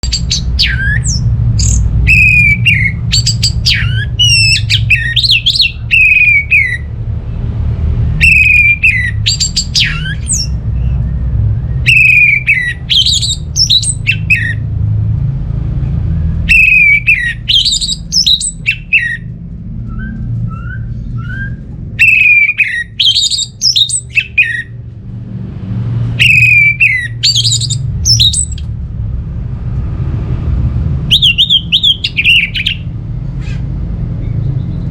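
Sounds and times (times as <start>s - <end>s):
thrush singing: 0.0s - 6.9s, 8.2s - 14.7s, 16.4s - 19.3s, 25.9s - 28.6s, 31.0s - 33.0s
low rumble: 0.0s - 34.9s.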